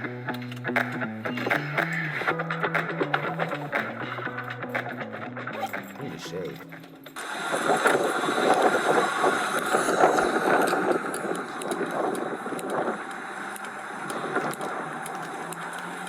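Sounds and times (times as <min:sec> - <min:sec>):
car running: 0:07.2 - 0:16.0
faint clicks: 0:09.5 - 0:16.0.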